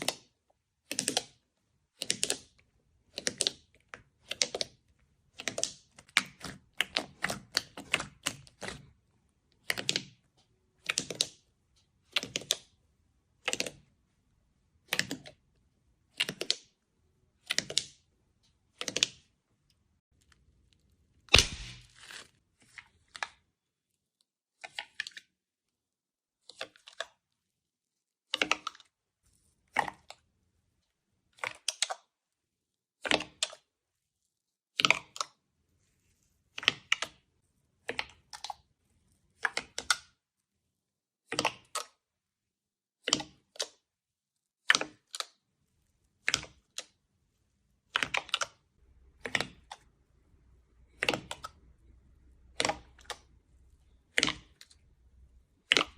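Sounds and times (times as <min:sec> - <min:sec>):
slime squishing by hand: 0:00.0 - 0:25.5, 0:44.5 - 0:55.9.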